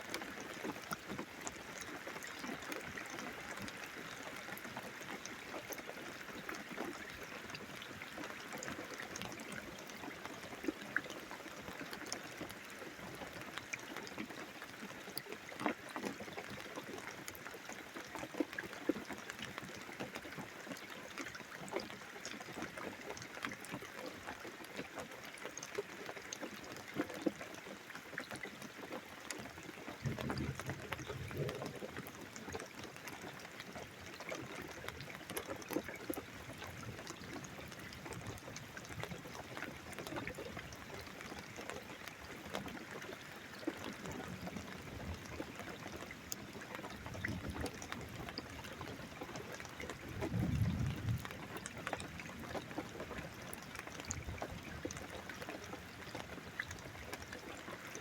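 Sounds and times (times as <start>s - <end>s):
steady rain dripping: 0.0s - 58.0s
low rumbles of thunder: 50.2s - 51.3s.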